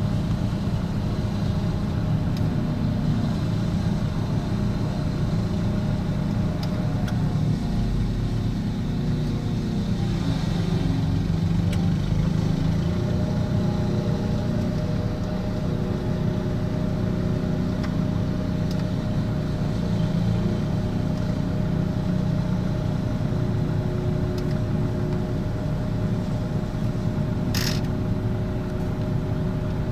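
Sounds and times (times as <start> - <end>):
engine droning: 0.0 - 29.9.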